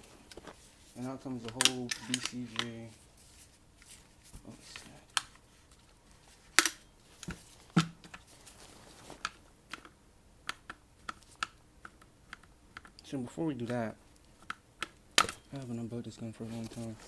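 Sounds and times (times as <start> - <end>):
metal shotgun parts clicking: 0.2 - 3.0, 6.5 - 8.3, 9.2 - 15.8.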